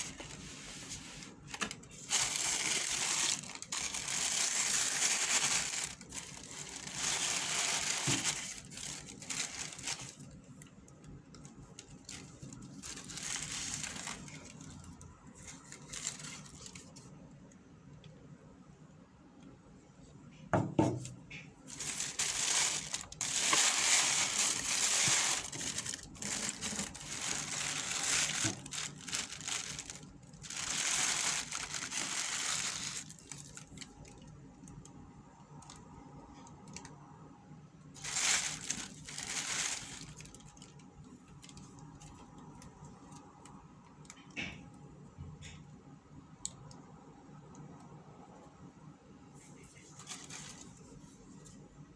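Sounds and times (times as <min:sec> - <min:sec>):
packaging paper rustling: 0:00.0 - 0:17.2, 0:21.7 - 0:34.3, 0:38.0 - 0:42.6, 0:49.8 - 0:51.2.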